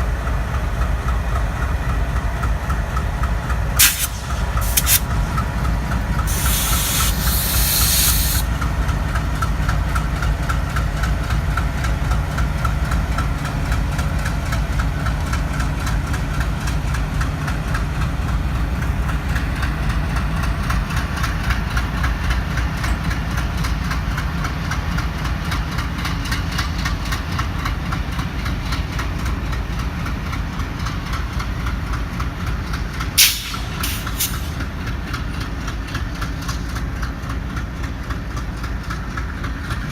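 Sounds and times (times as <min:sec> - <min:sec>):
diesel locomotive engines chugging: 0:00.0 - 0:39.9
burst of hiss: 0:03.8 - 0:05.2, 0:06.2 - 0:08.5, 0:33.2 - 0:34.6.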